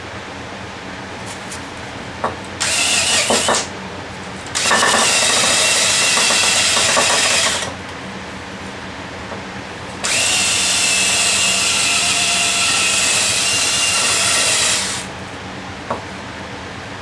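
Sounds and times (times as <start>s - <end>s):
power tool running: 2.6s - 3.7s, 4.5s - 7.8s, 10.0s - 15.2s.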